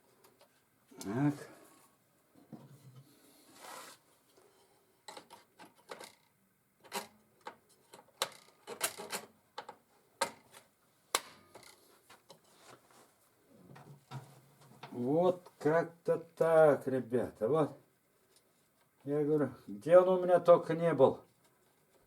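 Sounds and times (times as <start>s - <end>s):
short rustle: 3.4s - 4.4s.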